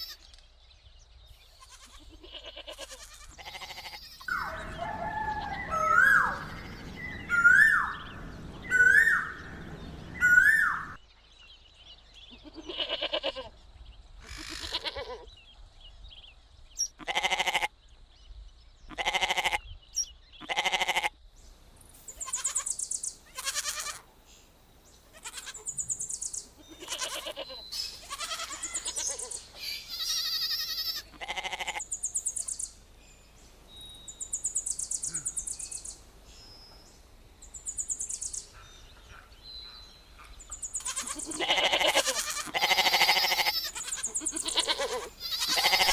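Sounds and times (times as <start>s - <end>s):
goat bleating: 0.0s - 0.2s, 1.6s - 4.3s, 12.4s - 13.5s, 14.3s - 15.3s, 17.0s - 17.7s, 18.9s - 19.6s, 20.4s - 21.1s, 22.2s - 24.0s, 25.1s - 25.7s, 26.6s - 31.9s, 40.8s - 45.9s
high-pitched chirping calls: 2.9s - 11.0s, 40.4s - 45.9s.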